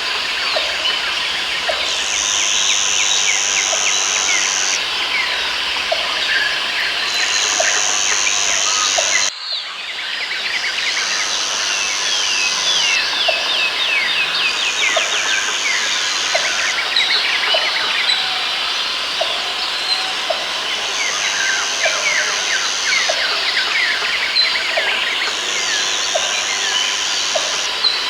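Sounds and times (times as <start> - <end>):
high insect buzz: 0.0 - 9.3, 10.5 - 28.0
birds chirping: 0.3 - 9.3.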